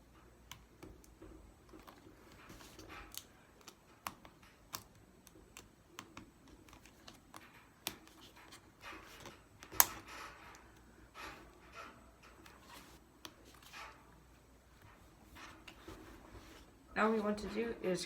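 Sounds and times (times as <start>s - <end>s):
small clicks and taps: 0.1s - 14.0s
soft rustling: 8.0s - 18.0s.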